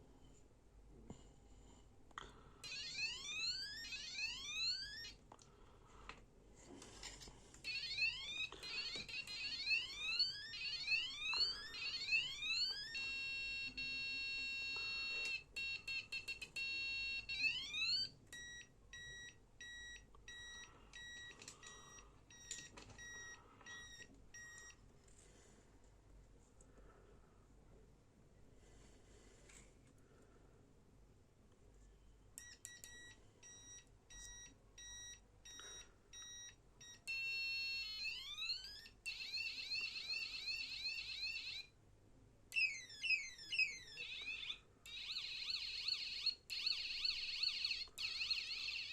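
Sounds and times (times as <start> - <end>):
electronic bike horn siren: 7.7 - 18.1, 42.5 - 48.9.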